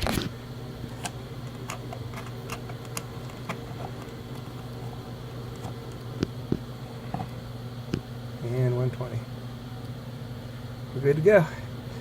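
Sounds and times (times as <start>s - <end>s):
low room hum: 0.0s - 12.0s
test probes clicking in outlet: 0.9s - 8.1s.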